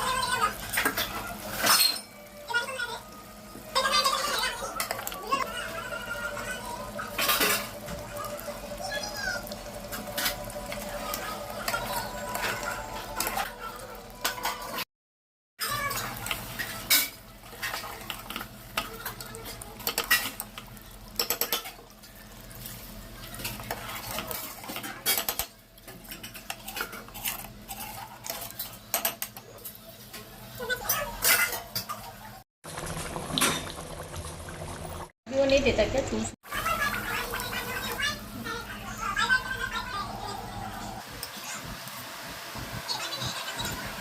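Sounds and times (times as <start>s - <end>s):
metal spoon scraping cooking pot: 23.4s - 29.8s.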